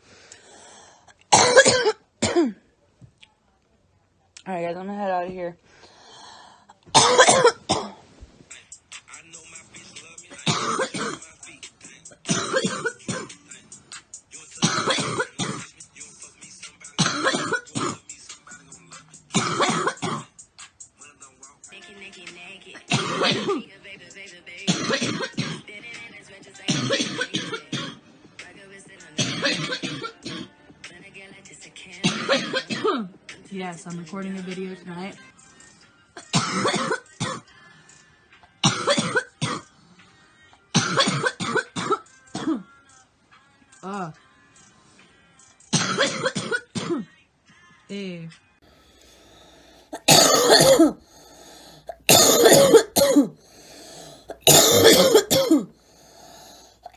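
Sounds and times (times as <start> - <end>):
woman coughing: 1.3 - 2.6, 6.9 - 8.0, 10.4 - 11.2, 12.3 - 13.3, 14.6 - 15.7, 17.0 - 18.0, 19.4 - 20.3, 22.8 - 23.7, 24.7 - 25.6, 26.7 - 28.0, 29.2 - 30.5, 32.1 - 33.2, 36.2 - 37.5, 38.6 - 39.7, 40.8 - 42.7, 45.8 - 47.1, 50.0 - 56.9.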